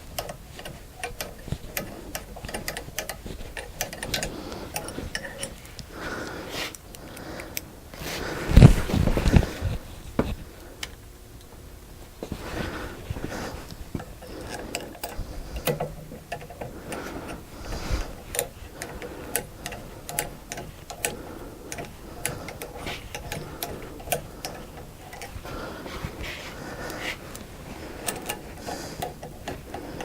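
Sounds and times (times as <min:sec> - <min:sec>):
hand tools clicking on metal parts: 0:00.0 - 0:07.7, 0:13.6 - 0:26.2, 0:26.8 - 0:30.0
rustling handling noise: 0:00.0 - 0:11.0, 0:11.9 - 0:30.0.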